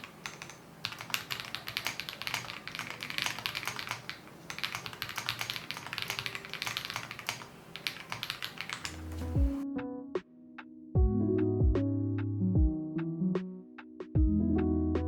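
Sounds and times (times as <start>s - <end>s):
mechanical keyboard typing: 0.0s - 9.6s.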